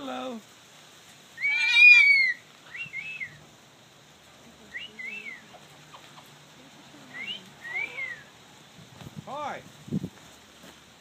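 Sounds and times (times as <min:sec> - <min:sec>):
parrot whistled calls: 0:01.4 - 0:03.4, 0:07.1 - 0:08.3.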